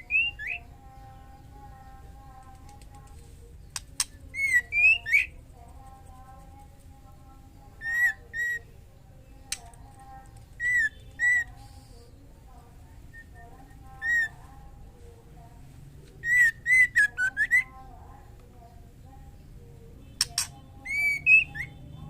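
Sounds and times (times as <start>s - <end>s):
sharp clicks: 2.4s - 4.2s, 9.4s - 10.6s, 20.2s - 20.6s
bird whistled calls: 4.4s - 5.3s, 16.2s - 17.7s, 20.3s - 21.8s.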